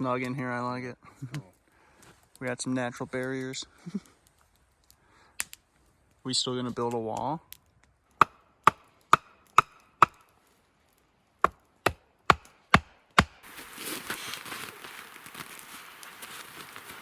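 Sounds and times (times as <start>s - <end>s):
wood being chopped: 8.2s - 10.2s, 11.4s - 13.6s
steady hiss with faint crackles: 13.4s - 17.0s.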